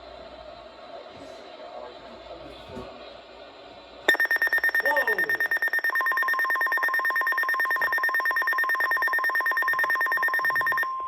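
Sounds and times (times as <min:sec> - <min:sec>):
high pulsing alert tone: 0:04.1 - 0:11.0
steady alarm tone: 0:04.1 - 0:11.0.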